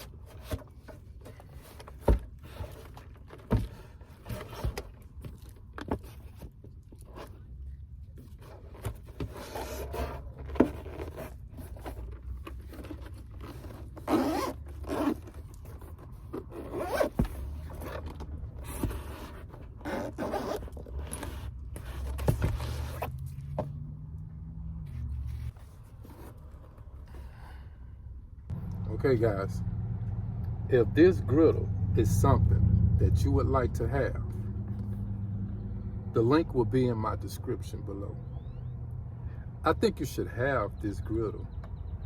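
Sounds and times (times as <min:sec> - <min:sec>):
scraping and rustling handling: 0:00.0 - 0:23.8.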